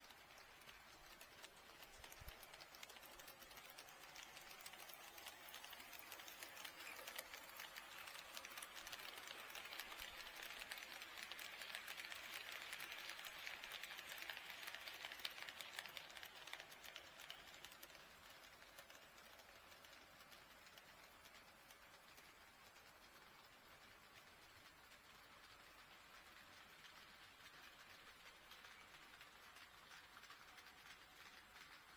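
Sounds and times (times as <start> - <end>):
model train wheels clicking: 0.0 - 31.9
light motor whirr: 0.2 - 21.4.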